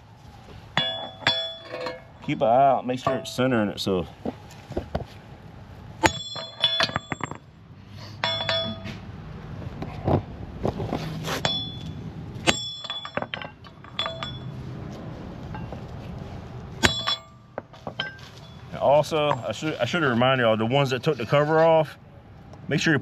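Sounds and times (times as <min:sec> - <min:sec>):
metal tools striking steel: 0:00.8 - 0:03.6, 0:06.0 - 0:07.4, 0:08.2 - 0:09.0, 0:11.4 - 0:14.6, 0:16.8 - 0:19.8.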